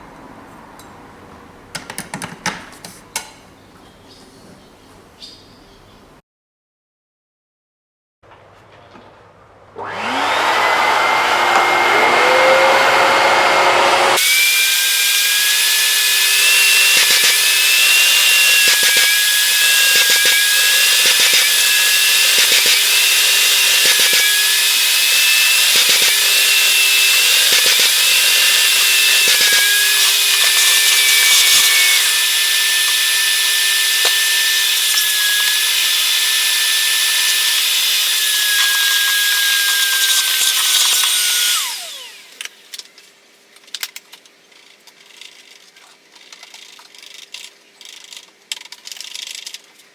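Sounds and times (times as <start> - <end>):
vacuum cleaner motor whine: 9.8 - 42.7.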